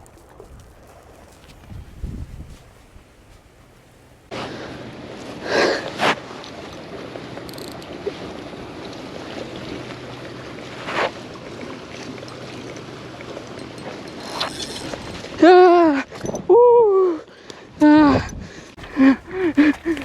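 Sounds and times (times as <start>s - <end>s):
rushing water: 4.2s - 16.2s, 18.8s - 20.0s
fish splashing: 18.8s - 20.0s.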